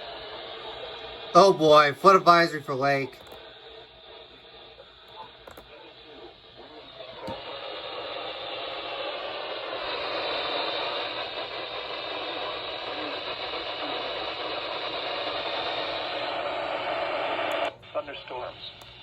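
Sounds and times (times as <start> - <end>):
radio static hiss: 0.0 - 19.0
faint voice on radio: 4.8 - 7.7, 17.8 - 18.8.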